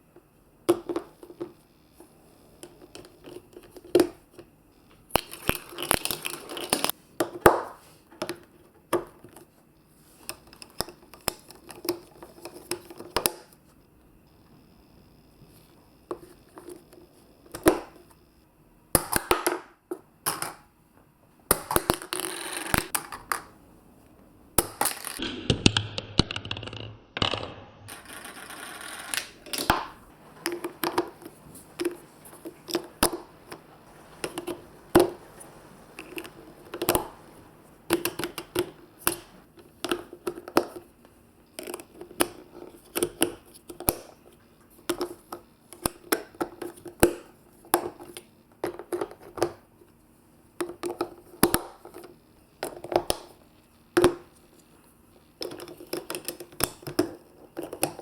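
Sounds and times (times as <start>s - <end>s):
marbles clattering down plastic run: 26.6s - 29.9s.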